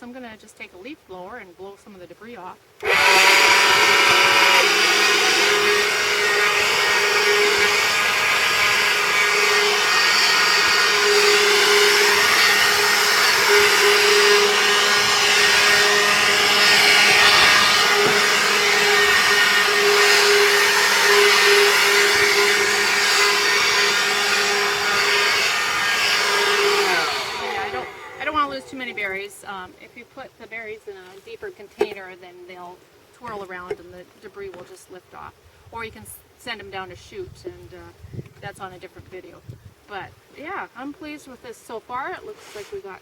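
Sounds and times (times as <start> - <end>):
leaf blower running: 2.8 - 29.4.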